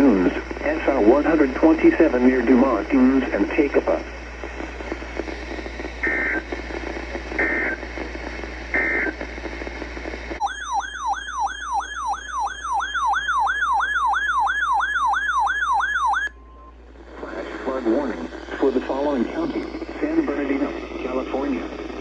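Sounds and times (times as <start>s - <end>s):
radio static: 0.0s - 13.0s, 16.9s - 22.0s
electronic siren-like tone: 10.4s - 16.7s.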